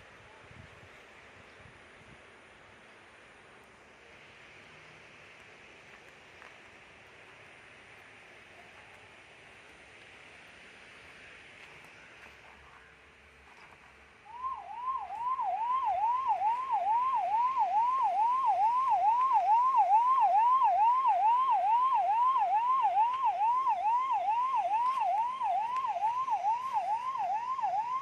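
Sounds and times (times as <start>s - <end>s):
ambulance siren yelping: 14.2s - 28.0s.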